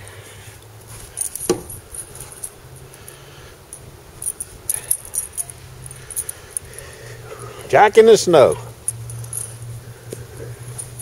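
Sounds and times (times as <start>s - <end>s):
metallic jingling and clicking: 1.0s - 7.2s, 8.4s - 11.0s.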